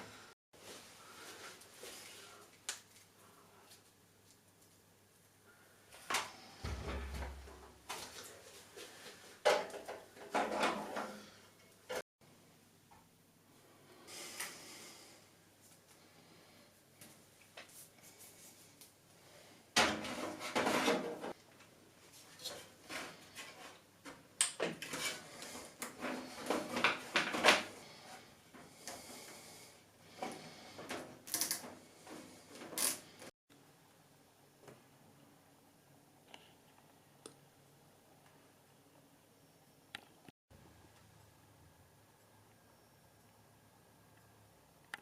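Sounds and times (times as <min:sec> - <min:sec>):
low thump: 0:06.6 - 0:07.6.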